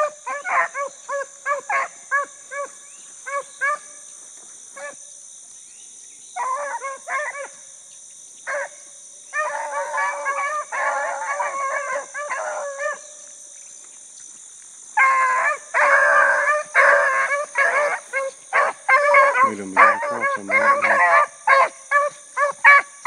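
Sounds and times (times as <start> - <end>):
dogs baying: 0.0 - 3.9, 9.4 - 13.1, 15.0 - 23.0.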